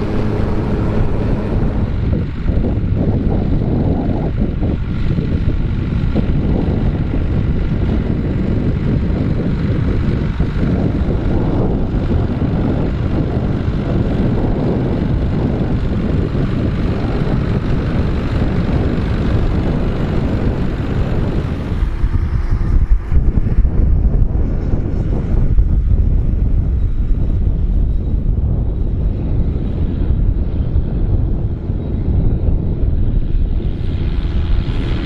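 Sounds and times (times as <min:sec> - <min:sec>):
tractor engine running: 0:00.0 - 0:26.1
wind buffeting microphone: 0:00.0 - 0:35.0.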